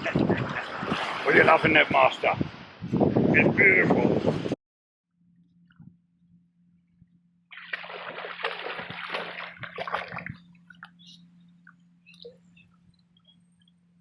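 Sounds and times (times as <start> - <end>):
water splashing and sloshing: 0.0 - 2.8, 7.5 - 11.1
faint low hum: 5.2 - 14.0.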